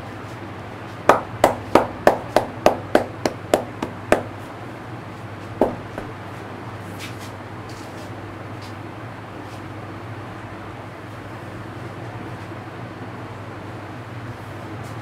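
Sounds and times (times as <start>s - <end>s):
steady low hum: 0.0s - 15.0s
hands slapping head: 1.1s - 4.3s.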